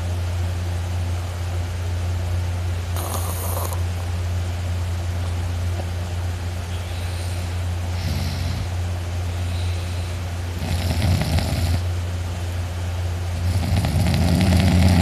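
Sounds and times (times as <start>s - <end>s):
steady low hum: 0.0s - 15.0s
man snoring loudly: 3.0s - 3.8s, 7.2s - 8.8s, 10.6s - 11.9s, 13.4s - 15.0s.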